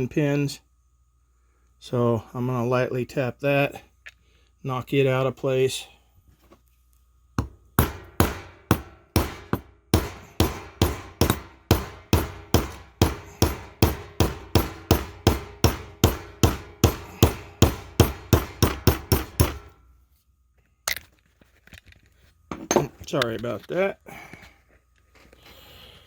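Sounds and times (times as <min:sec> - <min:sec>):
hammer striking metal pin: 0:07.4 - 0:19.7, 0:22.5 - 0:23.0.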